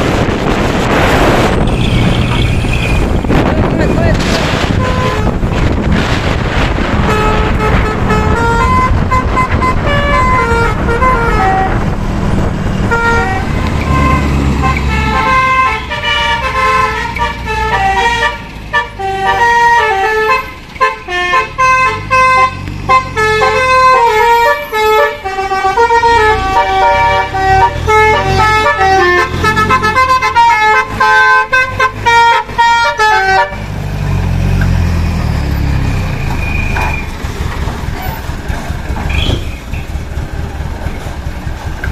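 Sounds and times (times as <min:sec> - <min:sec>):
truck engine running: 0:00.0 - 0:41.9
multi-tone horn melody: 0:04.7 - 0:05.8, 0:07.0 - 0:12.0, 0:12.8 - 0:33.7.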